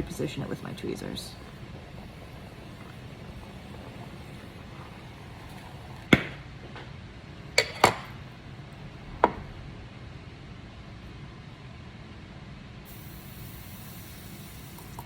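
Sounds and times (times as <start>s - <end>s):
faint hiss: 12.9s - 15.0s.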